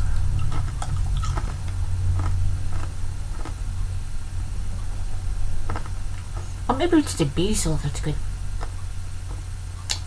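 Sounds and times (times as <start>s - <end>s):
cracker crunching: 0.0s - 3.7s, 5.6s - 6.7s
steady low hum: 0.0s - 10.0s
mouth chewing: 0.2s - 3.6s.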